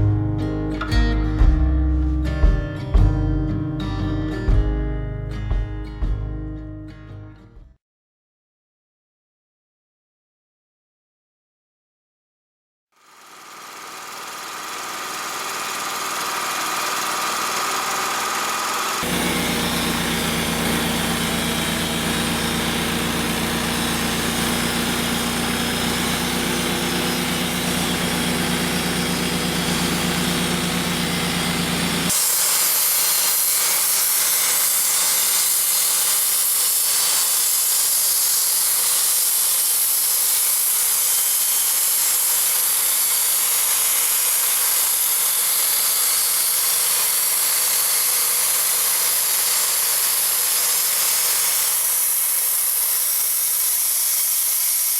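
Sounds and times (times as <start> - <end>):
sawmill engine running: 13.0 - 54.9
band blade sawing through log: 13.7 - 54.9.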